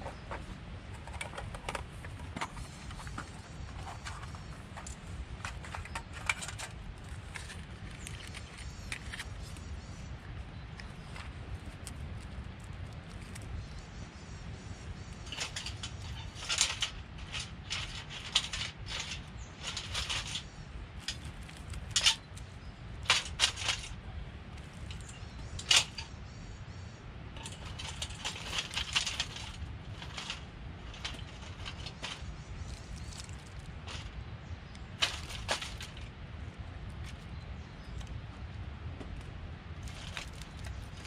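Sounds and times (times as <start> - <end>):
kindling rustling: 0.0 - 9.7, 15.0 - 26.2, 27.4 - 37.3, 39.8 - 41.0
low steady rumble: 0.0 - 41.0.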